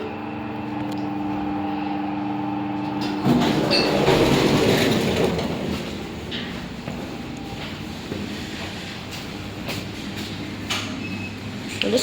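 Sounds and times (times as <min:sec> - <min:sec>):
lift humming: 0:00.0 - 0:12.0
lift doors sliding: 0:03.0 - 0:12.0.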